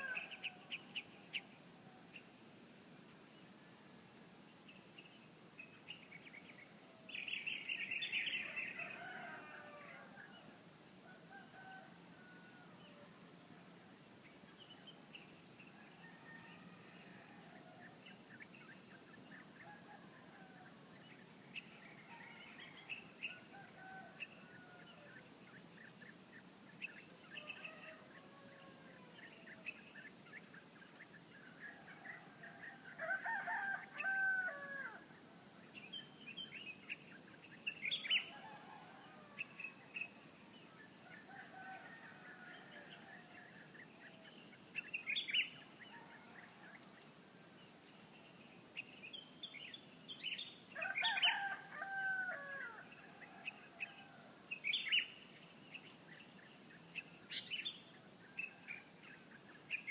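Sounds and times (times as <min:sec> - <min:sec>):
rooster crowing: 0:33.0 - 0:35.0, 0:41.3 - 0:42.8, 0:50.8 - 0:52.9.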